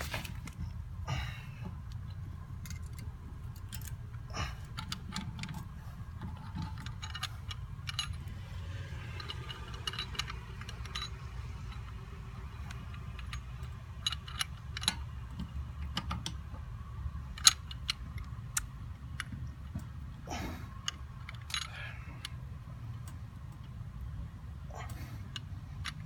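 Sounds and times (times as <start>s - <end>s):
steady low rumble: 0.0s - 26.0s
metal tools clinking: 4.7s - 16.2s, 20.4s - 22.3s.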